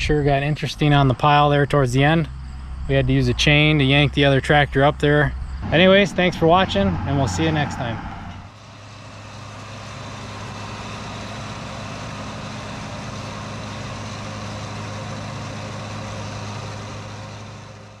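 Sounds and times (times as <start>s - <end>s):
tractor engine running: 0.0s - 18.0s.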